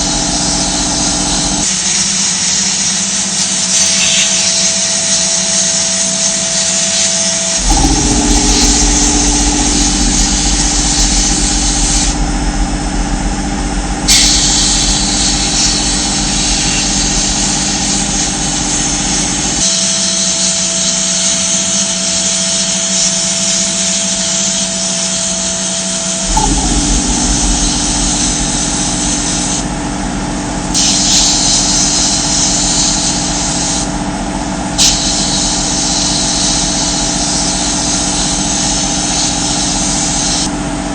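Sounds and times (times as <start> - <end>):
power tool running with hiss: 0.0 - 40.5.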